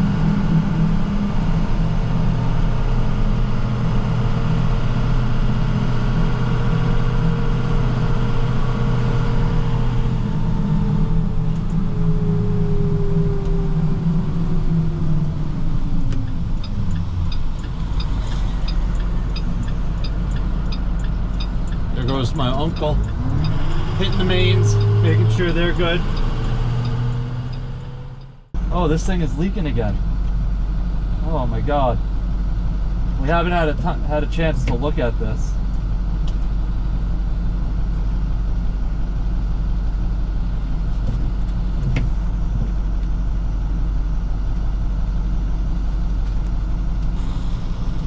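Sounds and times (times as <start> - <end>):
truck engine whine: 0.0 - 48.0
light regular ticking: 16.0 - 28.3.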